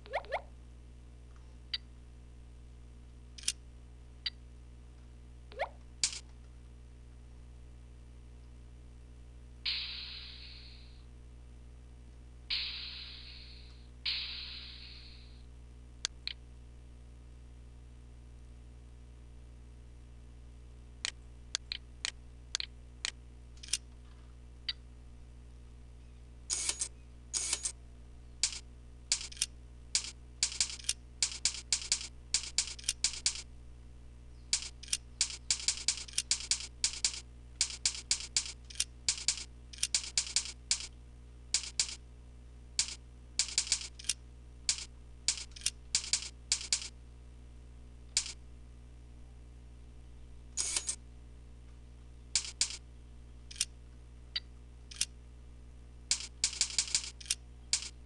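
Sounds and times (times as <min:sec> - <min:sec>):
steady low hum: 0:00.0 - 0:58.0
computer mouse clicks: 0:03.4 - 0:03.6, 0:28.4 - 0:33.4, 0:34.5 - 0:41.0, 0:41.6 - 0:42.0, 0:42.8 - 0:46.9, 0:48.1 - 0:48.4, 0:52.4 - 0:52.8, 0:53.5 - 0:53.7, 0:54.4 - 0:55.1, 0:56.1 - 0:58.0.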